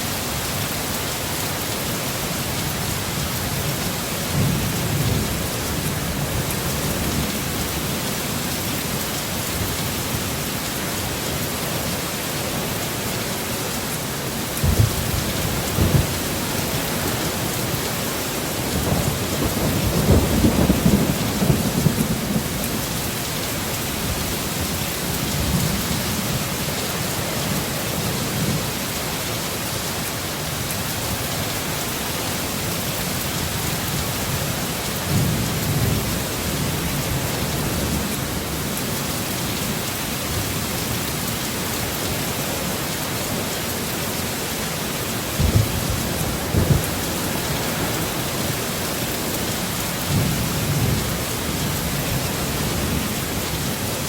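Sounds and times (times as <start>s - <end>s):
heavy rain: 0.0s - 54.0s
low thunder rumbling: 14.6s - 17.6s, 18.6s - 22.9s, 45.4s - 53.6s.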